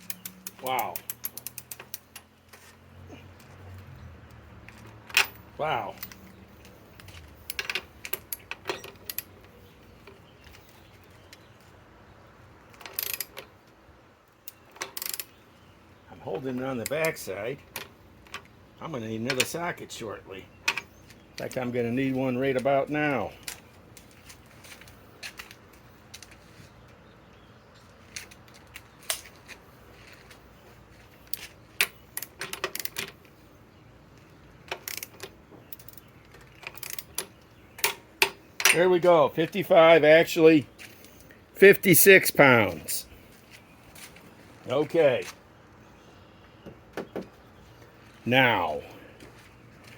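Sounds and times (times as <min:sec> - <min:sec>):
metal tools clicking: 0:00.0 - 0:02.3, 0:34.7 - 0:38.8
light metallic clicks and clinks: 0:03.4 - 0:09.6.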